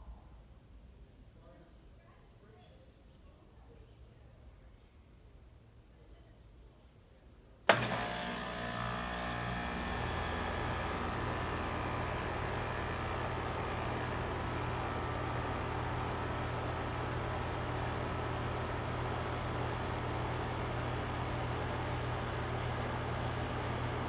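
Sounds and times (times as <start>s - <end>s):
compressor clunk: 7.7s - 24.0s
heat pump running hum: 7.7s - 24.0s.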